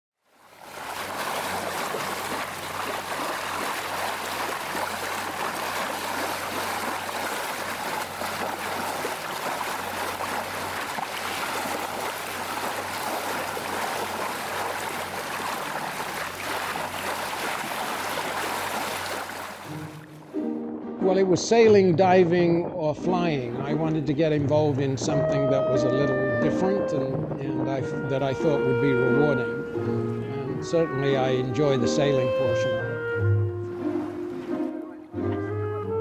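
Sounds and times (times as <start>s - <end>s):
water rushing along boat hull: 0.3s - 20.4s, 33.1s - 35.2s.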